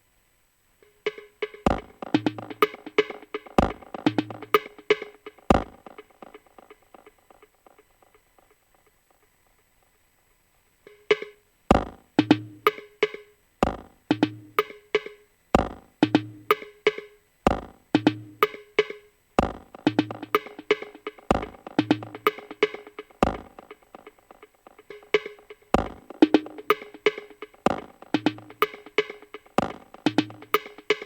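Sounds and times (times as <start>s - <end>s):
woody percussion hits: 1.1s - 7.1s, 11.1s - 16.6s, 17.5s - 18.6s, 19.4s - 31.0s
deep kick drum: 1.6s - 2.9s, 3.5s - 4.6s, 5.5s - 6.0s, 11.7s - 12.7s, 13.6s - 14.6s, 15.6s - 16.5s, 17.5s - 18.4s, 19.4s - 20.4s, 21.2s - 22.5s, 23.2s - 24.1s, 25.7s - 26.7s, 27.6s - 28.6s, 29.6s - 30.6s.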